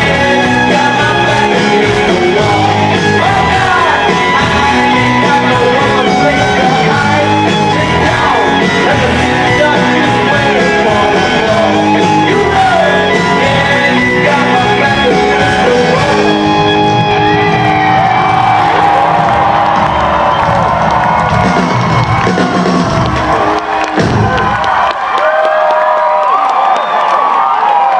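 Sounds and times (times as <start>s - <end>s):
shouted vocals: 0.0s - 22.3s
rock band playing loudly: 0.0s - 25.3s.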